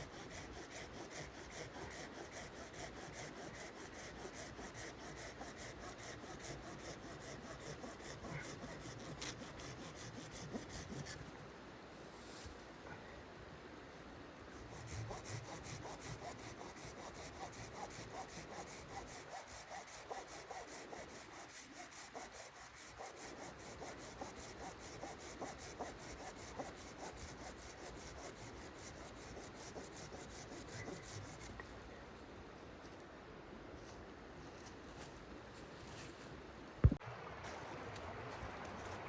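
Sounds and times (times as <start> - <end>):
faint rasping on wood: 0.0 - 11.2, 14.6 - 31.6.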